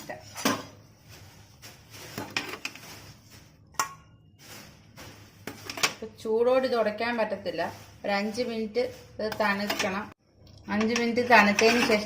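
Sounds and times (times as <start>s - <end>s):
utensils and dishes clinking: 9.4s - 10.1s, 10.7s - 12.0s.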